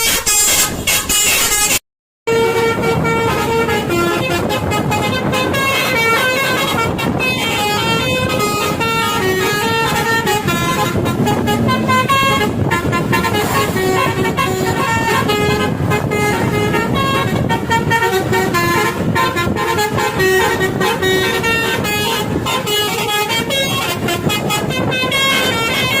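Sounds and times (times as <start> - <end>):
multi-tone bus horns playing tune: 0.0 - 26.0.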